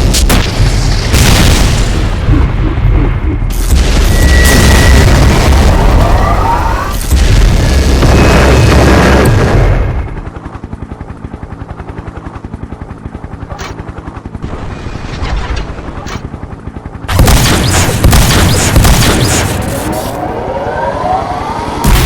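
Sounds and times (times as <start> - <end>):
machine-gun fire rattle: 17.1 - 20.0.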